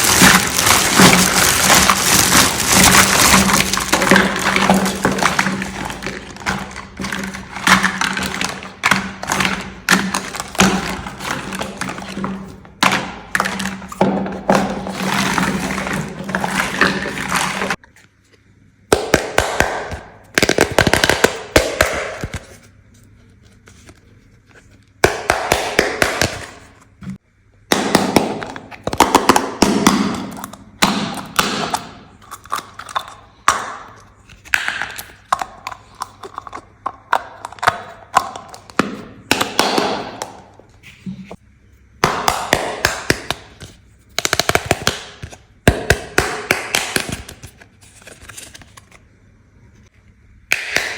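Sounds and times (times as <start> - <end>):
packaging rustling: 0.0 - 17.8.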